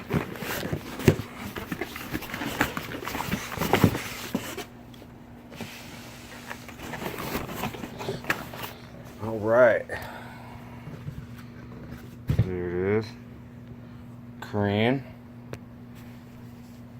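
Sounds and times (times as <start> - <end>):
cardboard box rustling and scraping: 0.0 - 9.7.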